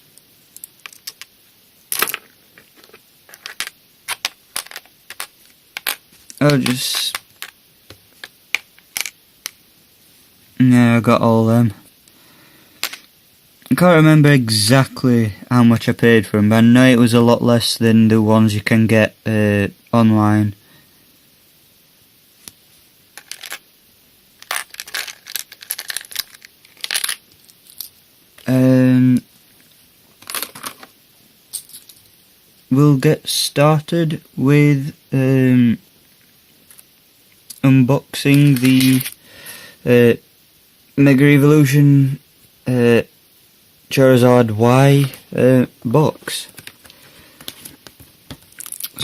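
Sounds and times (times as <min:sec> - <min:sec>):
small items clattering: 0:01.9 - 0:09.2, 0:23.2 - 0:23.6, 0:24.4 - 0:28.5, 0:30.2 - 0:30.9, 0:31.5 - 0:32.1, 0:38.3 - 0:39.2, 0:46.2 - 0:49.0.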